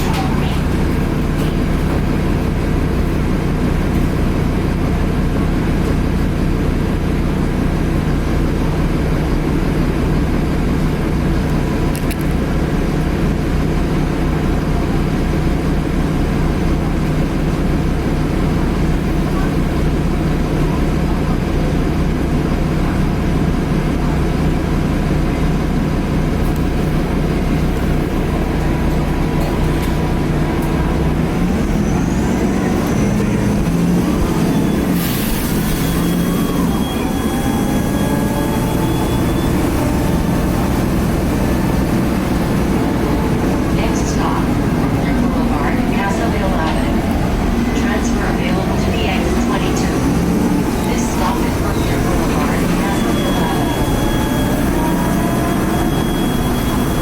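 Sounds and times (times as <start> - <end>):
road noise: 0.0 - 14.8, 26.3 - 57.0
bus diesel engine running: 0.0 - 57.0
turbo whine: 31.3 - 57.0.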